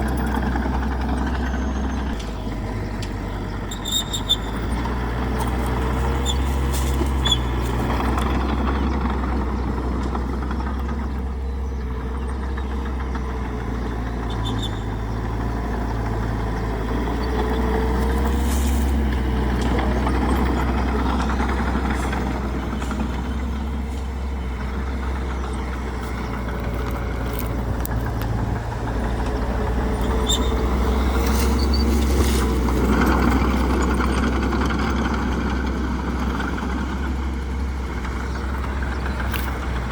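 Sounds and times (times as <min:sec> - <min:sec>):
bulldozer diesel engine droning: 0:00.0 - 0:39.9.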